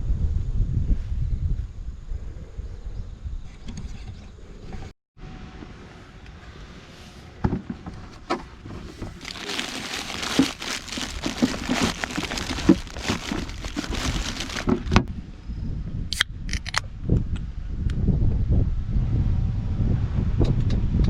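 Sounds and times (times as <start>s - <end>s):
crinkling and rustling: 7.7s - 15.1s.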